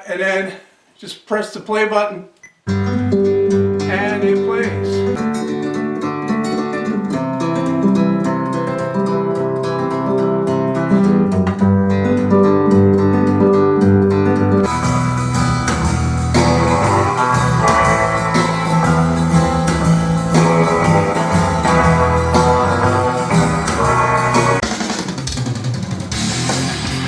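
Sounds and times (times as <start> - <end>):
plucked guitar line: 2.7 - 24.7
full band music: 14.6 - 27.0.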